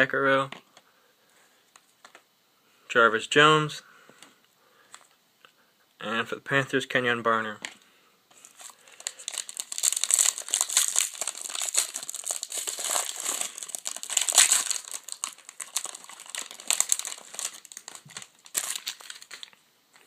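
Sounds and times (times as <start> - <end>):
plastic wrapper crinkling: 8.3 - 20.0.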